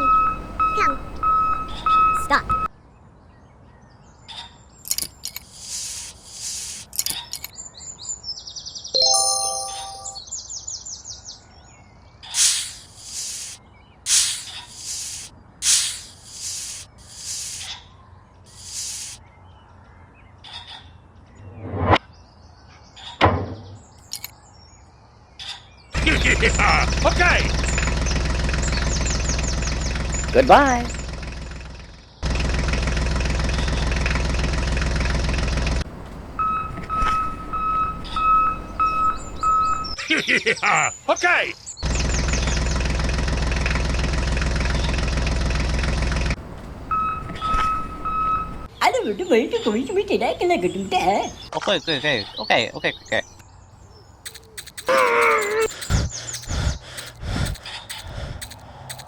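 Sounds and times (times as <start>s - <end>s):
electronic reversing beep: 0.0s - 2.7s, 36.4s - 40.0s, 46.9s - 48.7s
short hissing sprays: 5.4s - 7.0s, 12.4s - 17.7s, 18.5s - 19.2s, 54.3s - 59.0s
small vehicle engine running: 26.0s - 40.0s, 41.8s - 48.7s, 54.3s - 59.0s.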